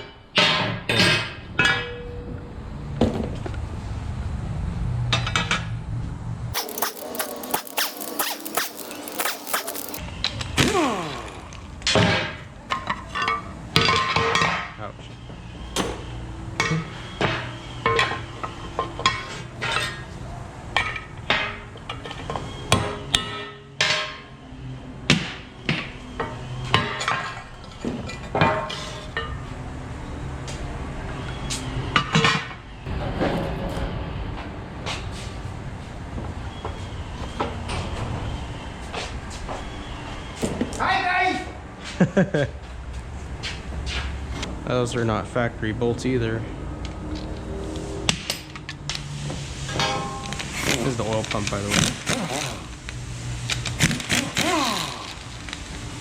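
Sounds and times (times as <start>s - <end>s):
hand tools clanking on metal: 6.6s - 10.0s.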